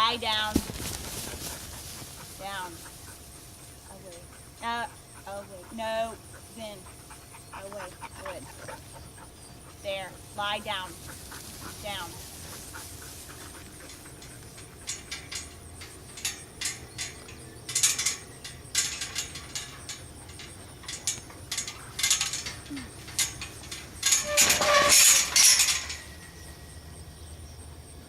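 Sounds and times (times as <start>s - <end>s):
metallic clicks and rattles: 9.9s - 26.4s.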